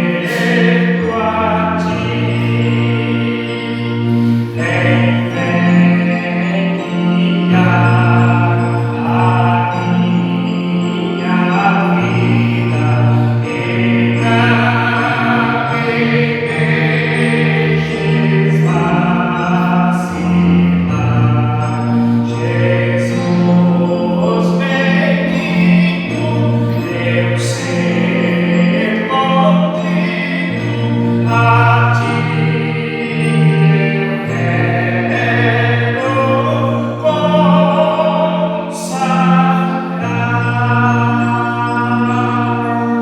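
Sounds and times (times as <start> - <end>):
instrumental accompaniment: 0.0 - 43.0
man singing church song: 0.0 - 43.0.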